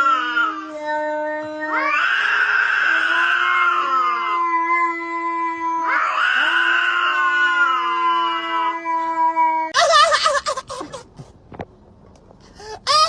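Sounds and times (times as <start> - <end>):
cat yowling: 0.0 - 9.8.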